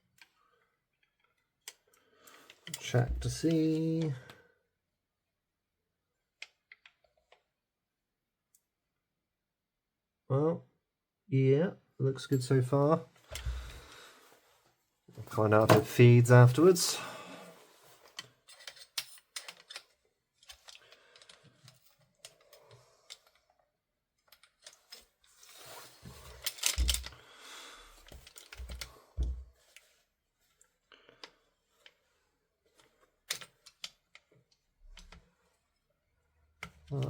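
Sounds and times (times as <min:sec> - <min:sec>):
small gun parts clicking: 0:18.2 - 0:23.4.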